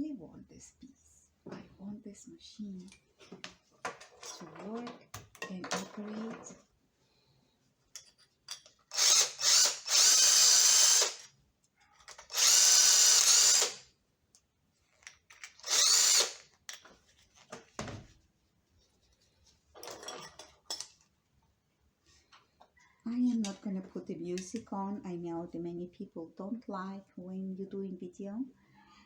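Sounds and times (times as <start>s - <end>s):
power drill whining: 8.9s - 11.3s, 12.1s - 13.8s, 15.5s - 16.5s.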